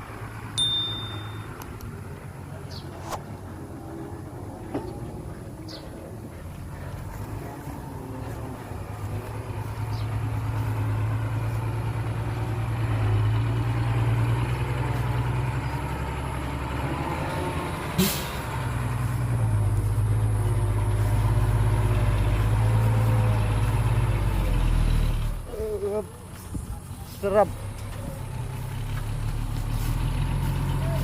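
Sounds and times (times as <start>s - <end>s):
diesel machinery engine drone: 0.0s - 31.0s.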